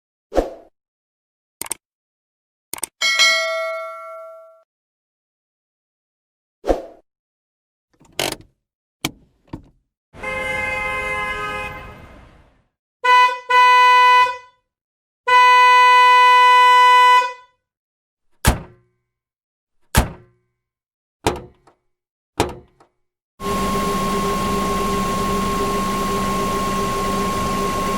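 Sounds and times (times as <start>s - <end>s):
sharp clunks and clicks: 8.0s - 9.8s, 18.4s - 18.9s, 20.0s - 20.4s, 21.3s - 21.8s, 22.4s - 22.9s
car horn honking: 10.2s - 12.1s, 13.0s - 14.5s, 15.3s - 17.5s.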